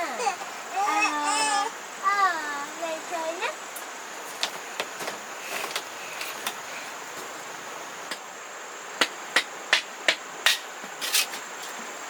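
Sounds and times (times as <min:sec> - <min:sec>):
insect buzz: 0:00.0 - 0:12.0
tool striking bamboo: 0:09.0 - 0:11.4.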